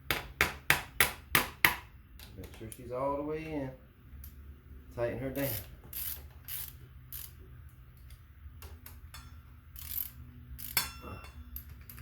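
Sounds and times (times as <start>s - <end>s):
ratchet wrench clicking: 5.4s - 7.4s, 8.8s - 12.0s
sharp metallic clack: 10.6s - 12.0s.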